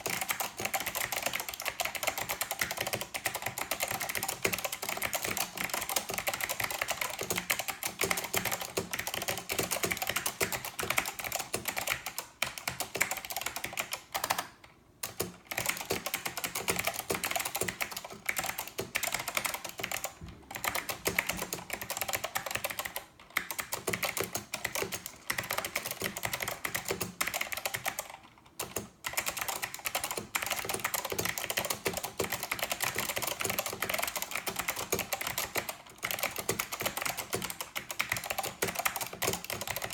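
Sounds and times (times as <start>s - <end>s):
fast clicky keyboard typing: 0.0s - 39.9s.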